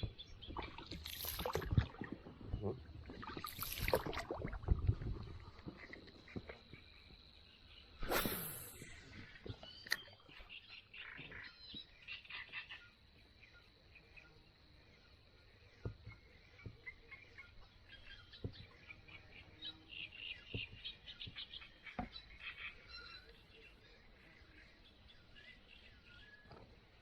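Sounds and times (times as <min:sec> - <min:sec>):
faint chirping calls: 0:00.0 - 0:27.0
loud rushing swish: 0:08.0 - 0:08.8.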